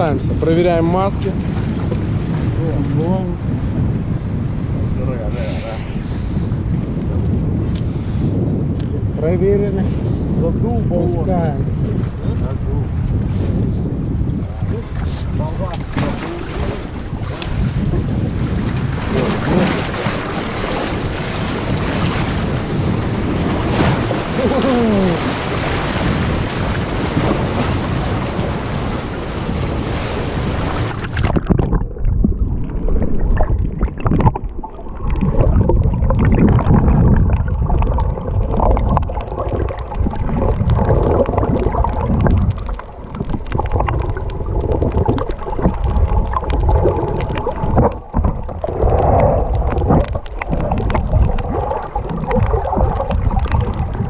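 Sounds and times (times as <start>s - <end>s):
underwater sloshing and bubbling: 0.0s - 54.0s
wind on microphone: 0.0s - 54.0s
water slapping at pontoon: 14.7s - 17.8s, 18.4s - 31.8s.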